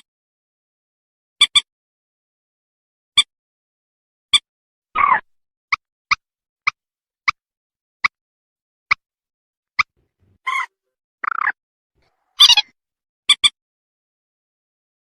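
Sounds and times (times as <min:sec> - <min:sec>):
rail bird calling: 0:09.8 - 0:11.6, 0:12.4 - 0:12.7.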